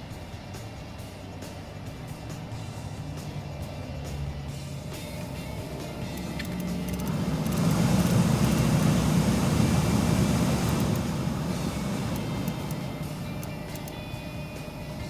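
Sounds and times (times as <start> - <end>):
car passing: 4.0 - 13.5.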